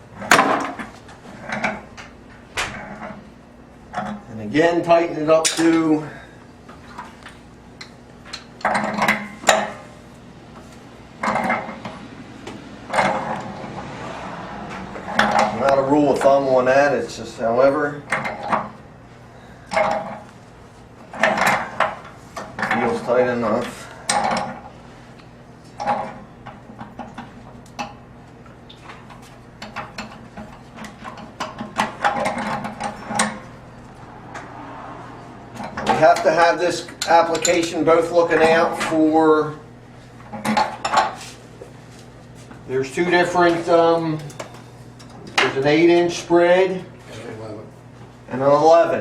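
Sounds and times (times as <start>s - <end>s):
wrench scraping and clinking metal: 43.6s - 45.3s.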